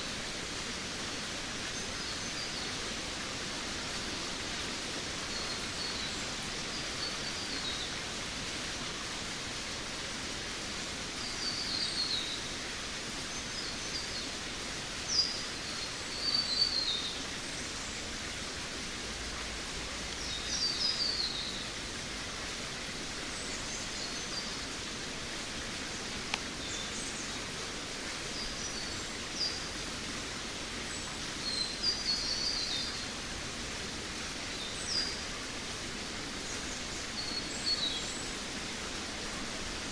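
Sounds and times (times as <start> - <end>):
steady background hiss: 0.0 - 39.9.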